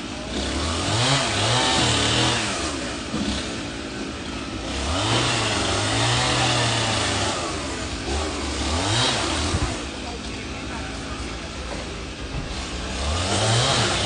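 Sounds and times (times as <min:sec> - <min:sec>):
chainsaw engine revving: 0:00.0 - 0:14.0.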